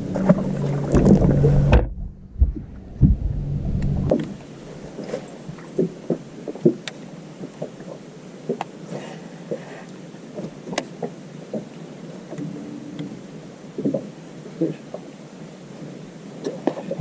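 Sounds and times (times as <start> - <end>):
clicks and knocks on a boat: 10.4 - 11.7.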